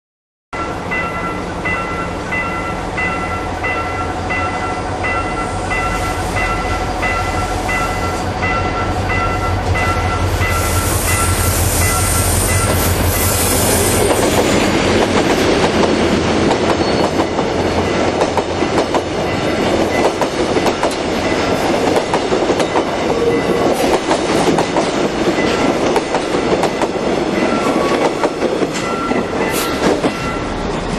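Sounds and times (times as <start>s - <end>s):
level-crossing bell chiming: 0.6s - 13.3s, 28.7s - 30.5s
diesel train engine drone: 0.6s - 30.9s
train wheels clattering over rails: 10.5s - 30.9s.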